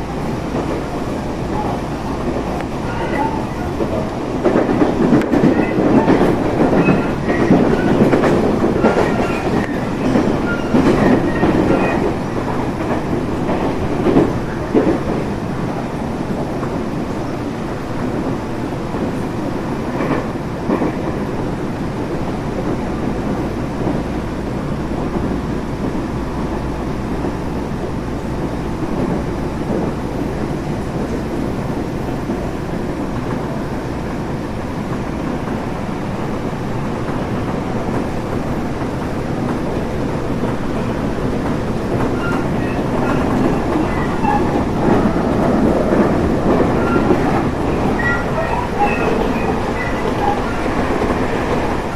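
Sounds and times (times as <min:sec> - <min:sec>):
train wheels rumbling on rails: 0:00.0 - 0:51.9
clacks over rail joints: 0:00.4 - 0:17.0, 0:36.9 - 0:51.9
high-pitched wheel squeals: 0:42.2 - 0:44.8, 0:46.7 - 0:50.9.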